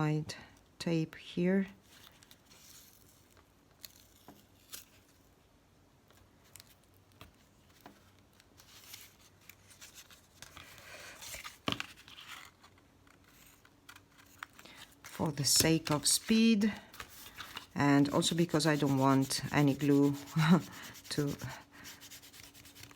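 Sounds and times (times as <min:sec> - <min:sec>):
paper rustling: 0:07.4 - 0:22.9.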